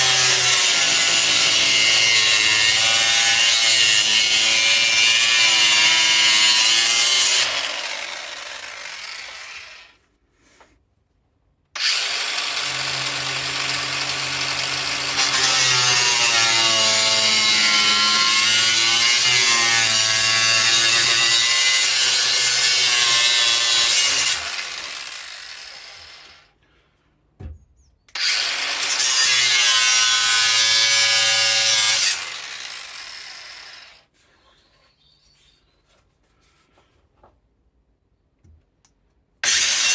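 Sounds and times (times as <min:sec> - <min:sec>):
angle grinder cutting metal: 0:00.0 - 0:10.0, 0:11.8 - 0:26.5, 0:28.1 - 0:34.0, 0:39.4 - 0:39.9.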